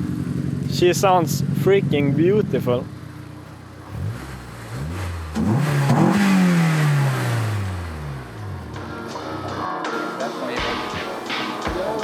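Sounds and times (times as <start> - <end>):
car engine accelerating: 0.0 - 9.6.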